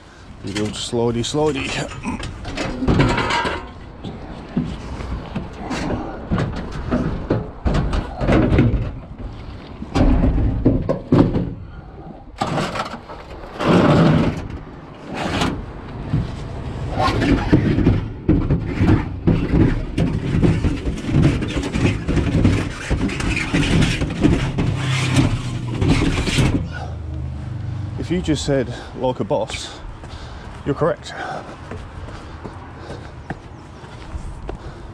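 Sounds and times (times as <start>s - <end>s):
washing machine scraping on stairs: 12.4s - 26.9s.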